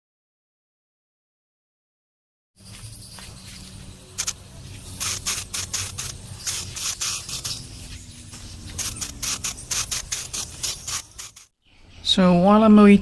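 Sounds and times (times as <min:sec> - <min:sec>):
spray paint can hissing bursts: 0:03.2 - 0:11.5.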